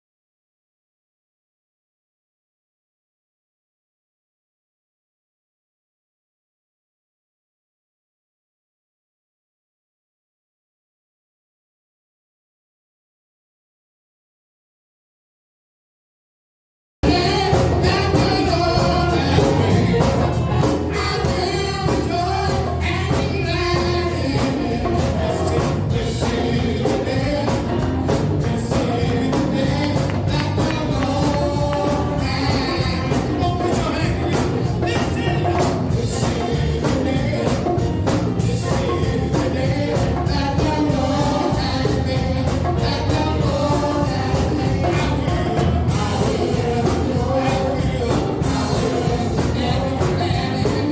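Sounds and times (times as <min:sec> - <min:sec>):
gospel worship music with singing: 0:17.0 - 0:50.9.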